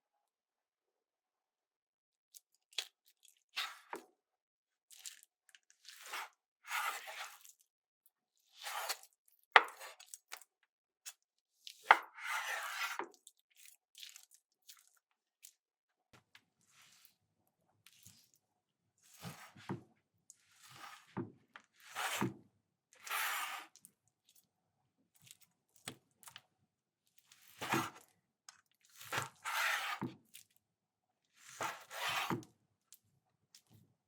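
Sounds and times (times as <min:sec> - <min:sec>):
knife cutting through meat: 0:21.8 - 0:22.3, 0:23.0 - 0:23.8, 0:27.4 - 0:28.0, 0:29.0 - 0:30.1, 0:31.4 - 0:32.4.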